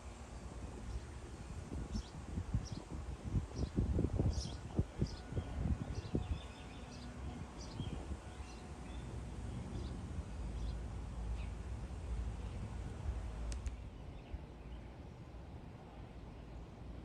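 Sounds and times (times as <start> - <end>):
low outdoor rumble: 0.0 - 17.0
small birds chirping: 1.9 - 2.9, 3.6 - 12.8.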